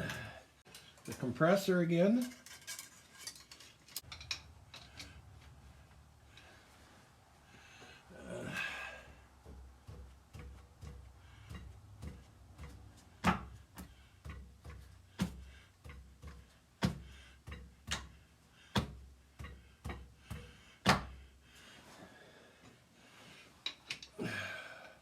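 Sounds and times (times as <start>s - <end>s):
sharp metal taps and clicks: 9.5s - 21.2s.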